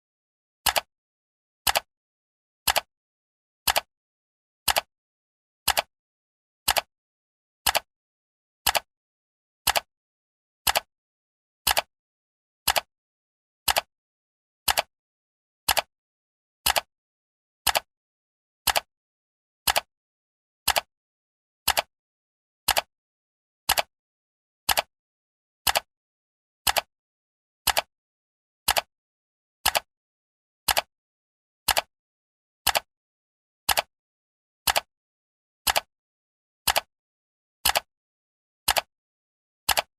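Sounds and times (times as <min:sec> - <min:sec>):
clock ticking: 0:03.7 - 0:03.9, 0:04.7 - 0:04.9, 0:06.7 - 0:06.9, 0:08.7 - 0:08.9, 0:09.7 - 0:09.9, 0:10.7 - 0:10.9, 0:11.7 - 0:11.9, 0:12.7 - 0:12.9, 0:13.7 - 0:13.9, 0:14.7 - 0:14.9, 0:17.7 - 0:17.9, 0:18.7 - 0:18.9, 0:19.7 - 0:19.9, 0:20.7 - 0:20.9, 0:24.7 - 0:24.9, 0:26.7 - 0:26.9, 0:27.7 - 0:27.9, 0:28.7 - 0:28.9, 0:31.7 - 0:31.9, 0:32.7 - 0:32.9, 0:34.7 - 0:34.9, 0:36.7 - 0:36.9, 0:37.6 - 0:37.9, 0:38.7 - 0:38.9, 0:39.7 - 0:39.9.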